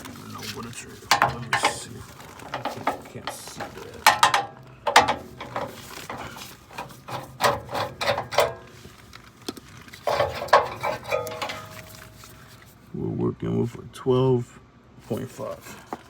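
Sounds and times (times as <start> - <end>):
metal parts and tools rattling: 1.0 - 9.0, 9.9 - 12.5.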